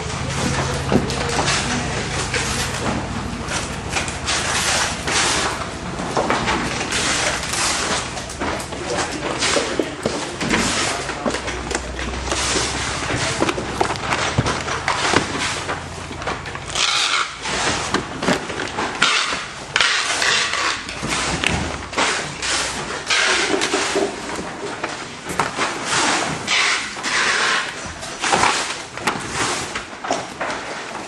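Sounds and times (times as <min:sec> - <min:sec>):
steady noisy background: 0:00.0 - 0:31.0
clattering and knocking: 0:00.3 - 0:16.7.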